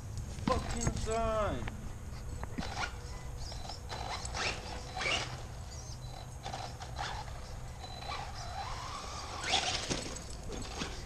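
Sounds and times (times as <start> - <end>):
toy truck motor whirring: 2.6 - 11.0.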